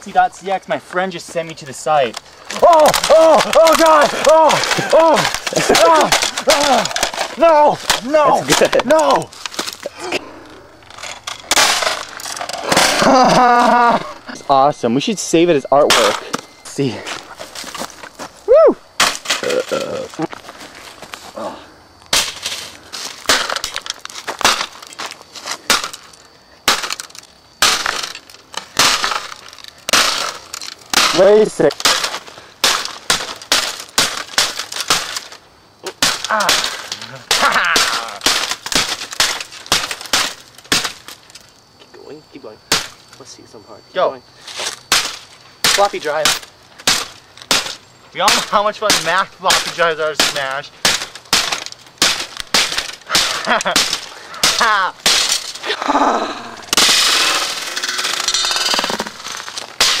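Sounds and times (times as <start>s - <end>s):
laptop case cracking under blows: 2.1s - 9.9s, 10.9s - 13.9s, 19.0s - 20.5s, 22.1s - 41.5s, 42.7s - 43.0s, 44.8s - 55.7s, 56.7s - 60.0s
noisy metal rattle: 56.7s - 60.0s.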